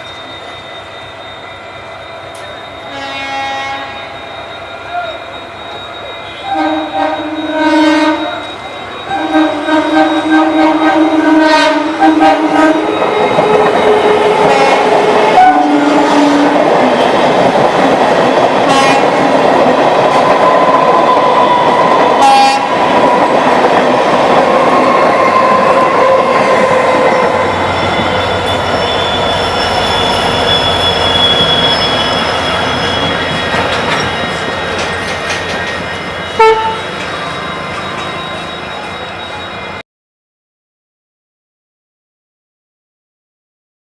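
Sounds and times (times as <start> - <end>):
train horn blasts: 2.8 - 4.2, 6.3 - 13.0, 14.4 - 16.6, 18.7 - 19.2, 22.2 - 22.7, 36.3 - 37.0
train wheels rumbling on rails: 4.2 - 39.7.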